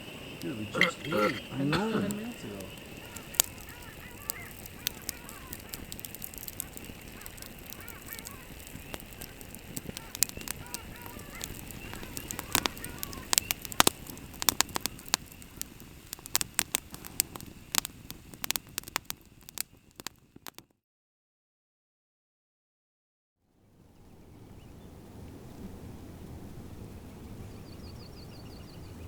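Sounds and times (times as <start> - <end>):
faint rising and falling calls: 0.0 - 17.5
campfire crackling and popping: 0.0 - 20.7.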